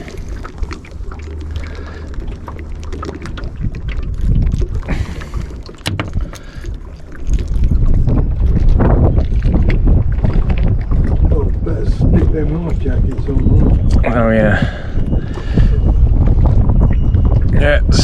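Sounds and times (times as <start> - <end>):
wind buffeting microphone: 0.0 - 18.0
sharp knocks and clicks: 5.7 - 6.4.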